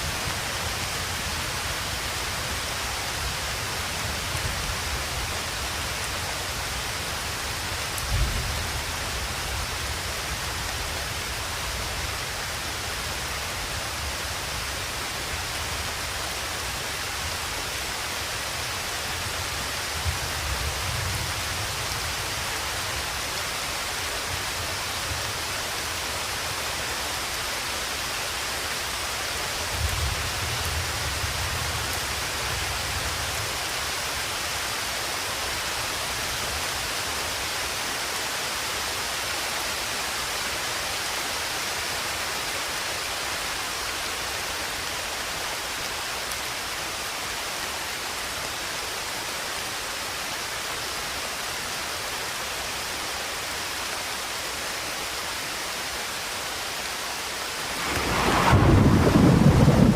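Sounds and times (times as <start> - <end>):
rainfall hiss: 0.0 - 59.9
distant thunder rumbling: 57.6 - 59.9.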